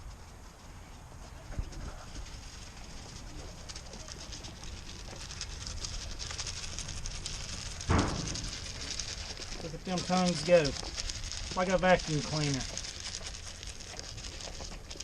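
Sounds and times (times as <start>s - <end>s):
goats licking feed: 0.0s - 15.0s.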